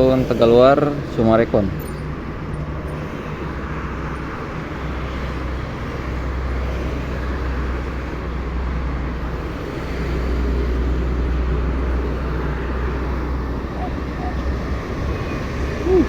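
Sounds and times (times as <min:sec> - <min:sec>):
high-speed train rumbling on track: 0:00.0 - 0:16.0
road traffic: 0:00.0 - 0:16.0.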